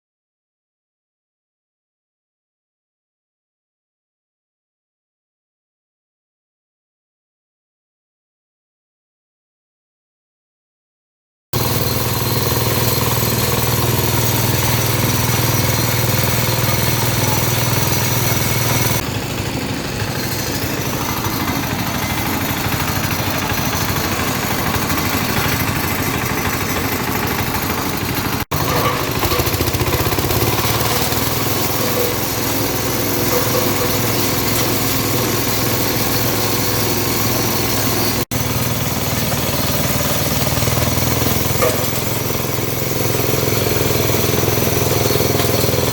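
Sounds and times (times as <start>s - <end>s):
grinding machine running: 11.6s - 45.9s.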